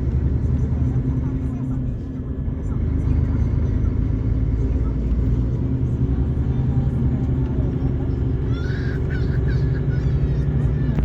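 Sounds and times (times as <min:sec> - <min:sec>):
diesel coach engine running: 0:00.0 - 0:11.0.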